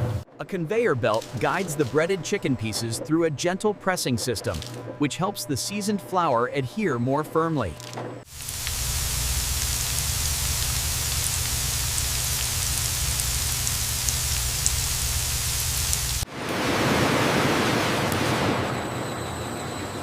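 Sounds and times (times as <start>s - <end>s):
low machine hum: 8.3s - 16.2s
rough loud hiss: 8.3s - 16.2s
machine hiss: 8.3s - 16.3s.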